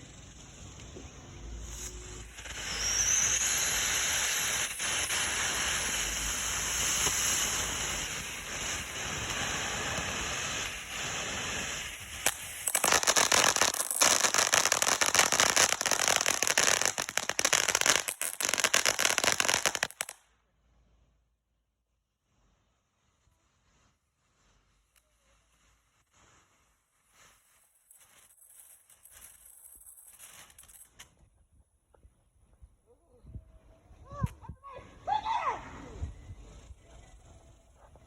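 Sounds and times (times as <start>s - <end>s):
fireworks crackling rapidly: 0.0s - 20.3s, 22.0s - 31.2s
fireworks hissing: 0.0s - 31.3s, 34.8s - 38.0s.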